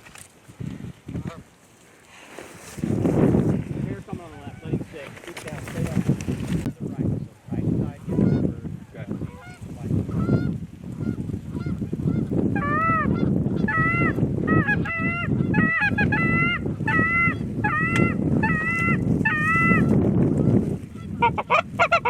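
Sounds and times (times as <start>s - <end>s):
wind rushing: 2.6s - 21.8s
goose clucks: 9.2s - 19.9s, 20.9s - 22.0s
goose honking: 9.2s - 19.9s, 20.9s - 22.0s.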